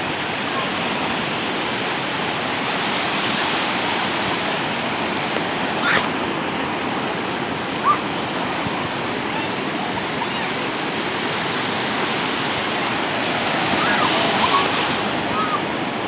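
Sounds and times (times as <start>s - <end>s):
ocean waves on shore: 0.0s - 16.0s.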